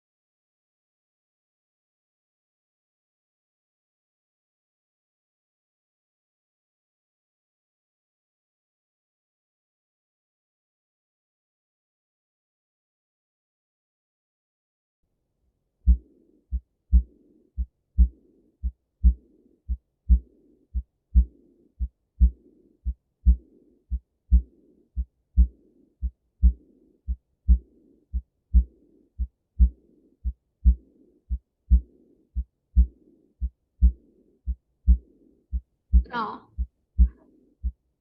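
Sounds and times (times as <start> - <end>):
heartbeat through stethoscope: 15.8 - 37.8
soft hissing heart murmur: 15.9 - 18.4, 19.0 - 20.5, 21.2 - 22.6, 23.2 - 36.1.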